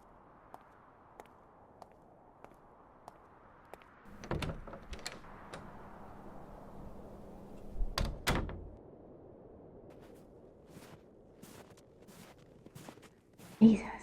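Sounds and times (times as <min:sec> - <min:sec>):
soft footsteps: 0:00.0 - 0:04.0, 0:09.9 - 0:14.0
storm wind rushing: 0:00.0 - 0:10.6
door banging shut: 0:04.1 - 0:05.2, 0:07.9 - 0:08.7
door opening: 0:04.1 - 0:06.3, 0:07.5 - 0:08.8.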